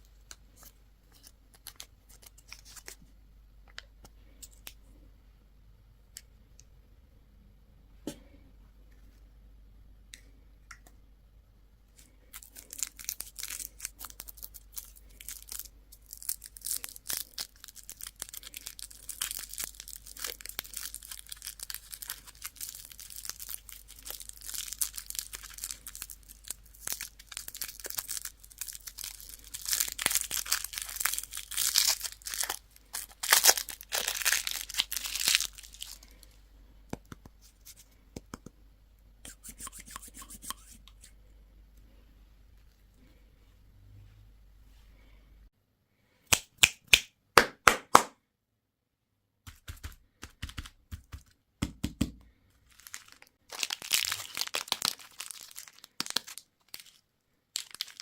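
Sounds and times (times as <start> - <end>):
candy wrapper crinkling: 0.1 - 3.0, 12.0 - 36.4, 52.6 - 58.0.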